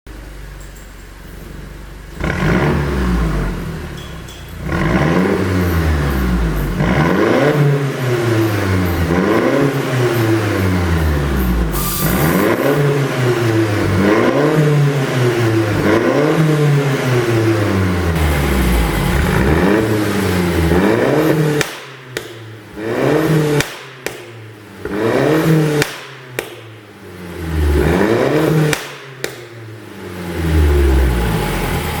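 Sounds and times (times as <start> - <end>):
car engine revving: 2.1 - 4.0, 4.6 - 32.0
exhaust pops: 21.5 - 22.6, 23.2 - 25.0, 25.6 - 26.8, 28.6 - 29.7.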